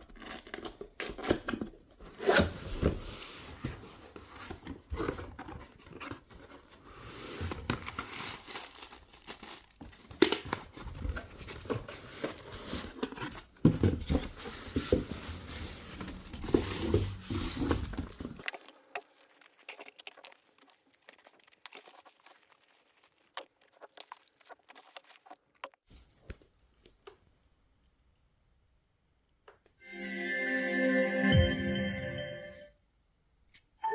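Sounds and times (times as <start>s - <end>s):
packaging crinkling and rustling: 4.1s - 25.8s.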